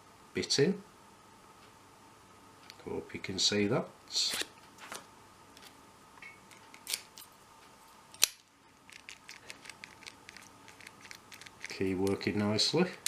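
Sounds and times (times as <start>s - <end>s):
padlock mechanism snap: 8.2s - 11.7s.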